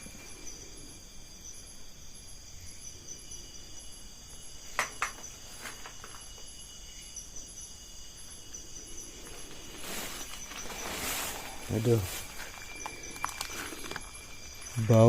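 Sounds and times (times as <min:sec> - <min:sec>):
insects chirring: 0:00.0 - 0:15.0
pulsing insect trill: 0:00.0 - 0:15.0.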